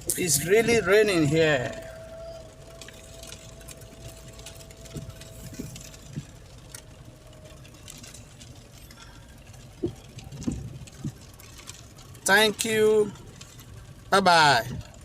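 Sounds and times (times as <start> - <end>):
held whine: 0.0 - 13.9
low engine hum: 0.0 - 15.0.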